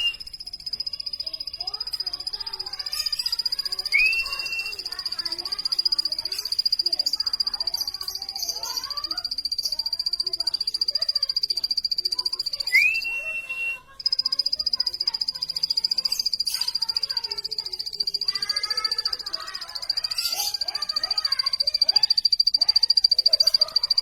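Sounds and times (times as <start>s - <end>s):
rising whistle: 0.0s - 0.4s, 3.8s - 4.9s, 12.7s - 13.8s
bird calling rapid high notes: 0.0s - 24.0s.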